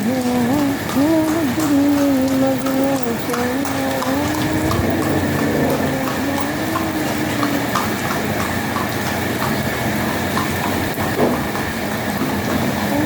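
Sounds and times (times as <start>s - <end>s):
light regular ticking: 0.2s - 11.0s
liquid rushing: 3.1s - 8.4s.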